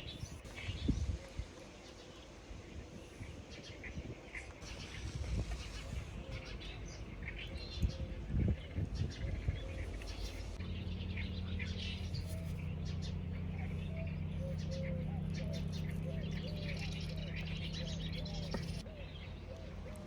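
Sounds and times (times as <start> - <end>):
birds chirping: 0.0 - 20.0
low rumble: 0.0 - 20.0.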